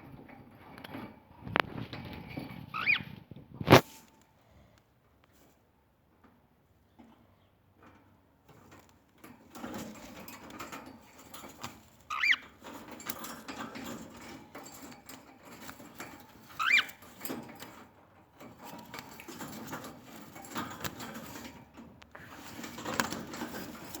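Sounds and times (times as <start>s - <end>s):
cockatiel chirps: 2.7s - 3.1s, 16.6s - 17.0s
scratchy rustling: 18.4s - 24.0s.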